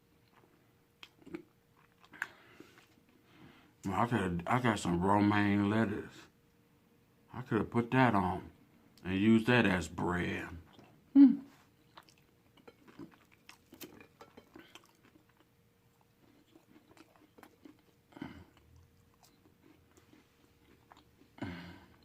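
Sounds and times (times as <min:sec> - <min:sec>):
faint chewing: 0:00.2 - 0:03.2, 0:11.6 - 0:22.0.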